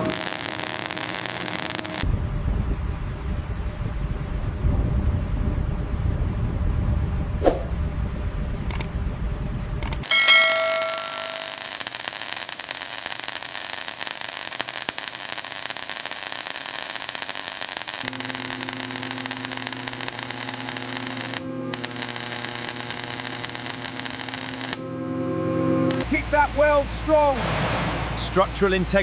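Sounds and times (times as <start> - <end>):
arc welding hiss and crackle: 0.0 - 2.0, 10.0 - 24.8, 25.9 - 29.0
low steady hum: 2.0 - 11.5, 18.1 - 29.0.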